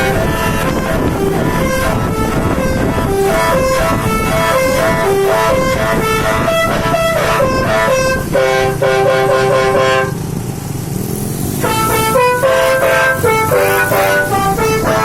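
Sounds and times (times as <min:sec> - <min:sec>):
low rising sound: 0:00.0 - 0:08.8
multi-note bus air horn melody: 0:00.0 - 0:10.2, 0:11.6 - 0:15.0.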